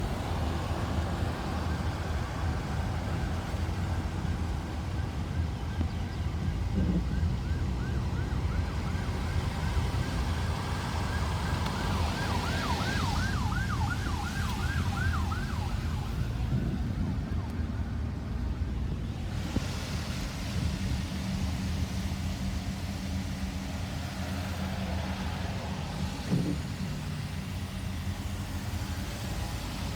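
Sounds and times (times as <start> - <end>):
ambulance siren yelping: 0.2 - 18.6.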